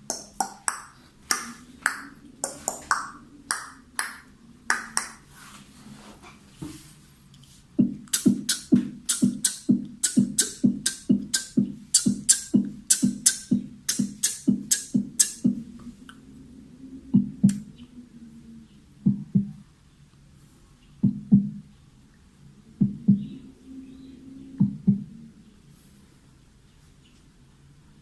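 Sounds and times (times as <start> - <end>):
beatbox thumps with hissing clicks: 0.0 - 1.5, 2.4 - 3.1, 7.8 - 15.7, 17.2 - 17.6.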